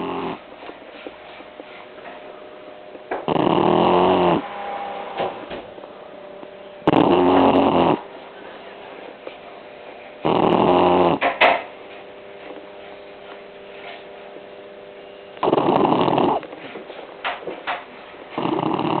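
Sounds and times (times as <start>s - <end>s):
puppy snoring: 0.0s - 1.8s, 3.0s - 4.5s, 6.4s - 8.1s, 10.2s - 11.4s, 15.4s - 16.8s, 18.3s - 19.0s.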